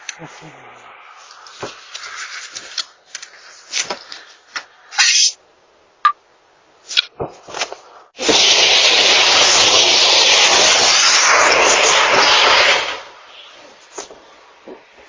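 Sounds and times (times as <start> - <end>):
loud rushing hiss: 8.2 - 15.0.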